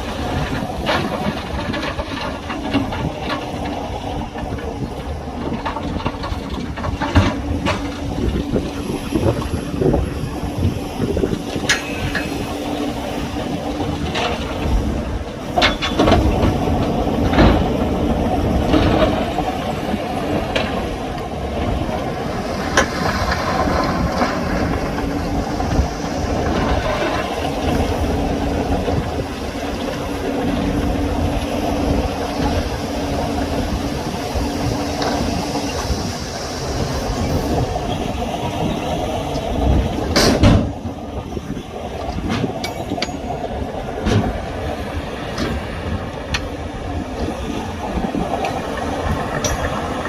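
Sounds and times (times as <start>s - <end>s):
sharp metallic clanks: 11.7s - 12.4s, 42.3s - 44.3s, 49.4s - 50.0s.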